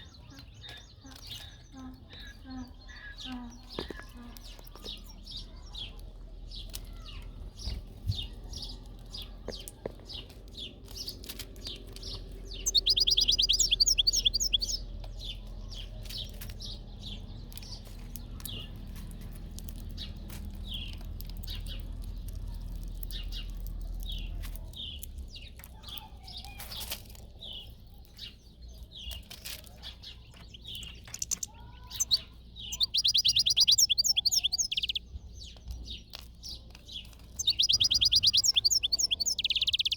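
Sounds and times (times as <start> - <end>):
rapid bird twittering: 0.0 - 39.9
goldfinch chirping: 10.6 - 18.8, 30.1 - 39.9.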